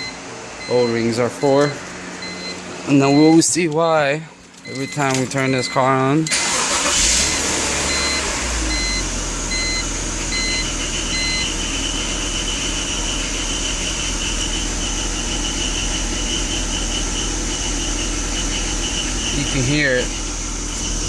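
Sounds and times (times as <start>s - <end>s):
warning chime beeping: 0.0s - 3.6s, 4.6s - 11.4s
car engine idling roughly: 4.7s - 21.0s.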